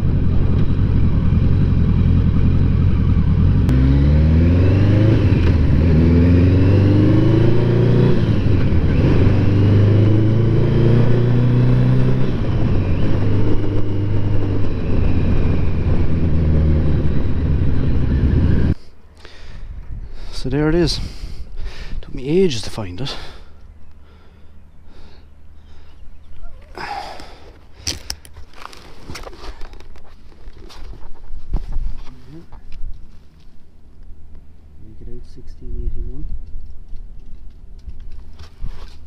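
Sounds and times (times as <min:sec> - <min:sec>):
motorcycle engine accelerating: 0:00.0 - 0:18.8
rushing wind noise: 0:04.4 - 0:18.8, 0:19.4 - 0:22.3.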